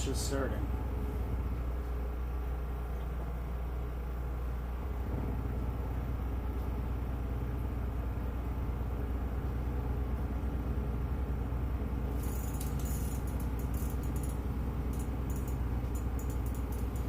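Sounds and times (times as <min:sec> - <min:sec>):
engine running with low pulsing: 0:00.0 - 0:17.0.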